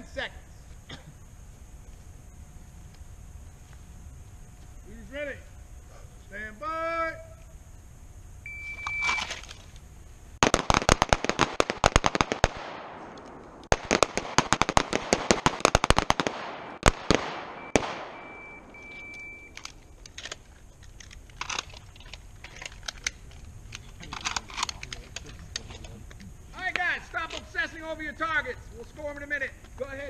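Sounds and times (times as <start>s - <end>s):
electronic timer beep: 8.4s - 9.3s, 17.6s - 19.6s
pistol fire: 10.4s - 18.6s.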